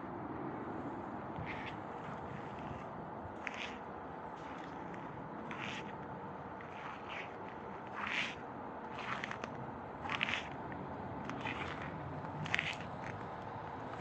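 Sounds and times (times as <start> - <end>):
steady outdoor hiss: 0.0 - 14.0
footsteps crunching in snow: 1.4 - 14.0.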